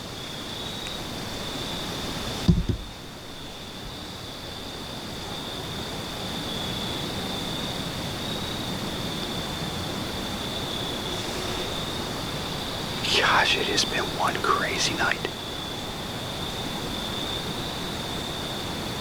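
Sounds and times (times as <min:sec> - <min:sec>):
background hiss: 0:10.5 - 0:15.4
insect chorus trilling: 0:10.8 - 0:14.2.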